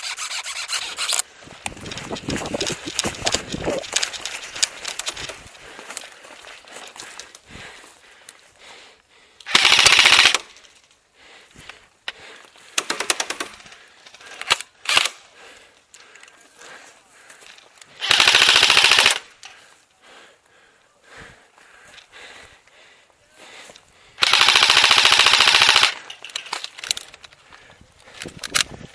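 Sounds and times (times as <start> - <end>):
airsoft rifle bursts: 9.4 - 10.6, 18.0 - 19.4, 24.2 - 27.1.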